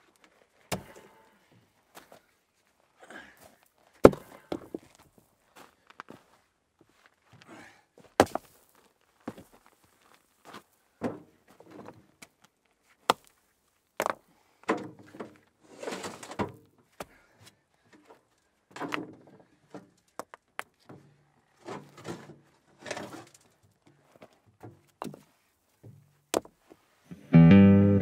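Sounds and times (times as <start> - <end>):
scraping rustle: 15.7 - 16.4.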